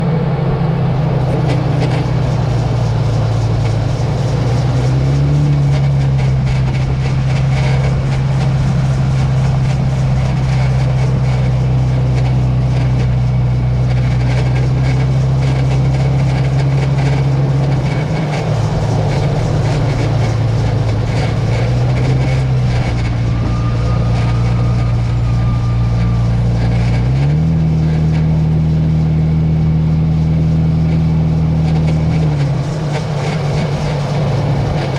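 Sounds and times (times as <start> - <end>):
vehicle drivetrain and road drone: 0.0 - 34.9
faint high-pitched squeal: 1.3 - 29.3.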